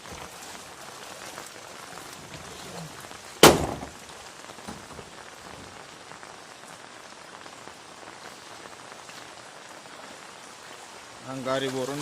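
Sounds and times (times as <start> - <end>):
rain falling: 0.0 - 12.0
loud sharp thump: 3.4 - 4.0.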